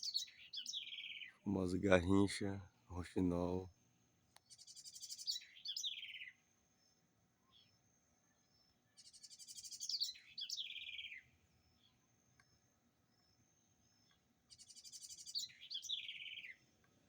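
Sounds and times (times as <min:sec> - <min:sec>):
wren singing high trill: 0:00.0 - 0:02.1, 0:04.5 - 0:06.4, 0:09.0 - 0:11.3, 0:14.5 - 0:16.6.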